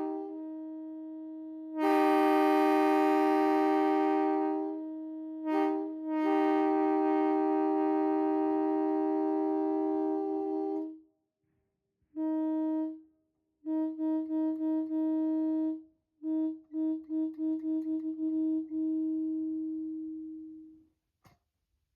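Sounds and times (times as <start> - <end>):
single-note horn blasts: 0.0 - 10.9
railroad air horn chord: 0.0 - 11.0, 12.2 - 13.0, 13.6 - 20.5.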